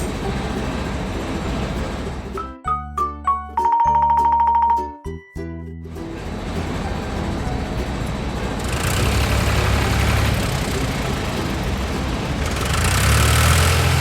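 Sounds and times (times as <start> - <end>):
heavy vehicle engine rumble: 0.0 - 3.0, 5.4 - 14.0.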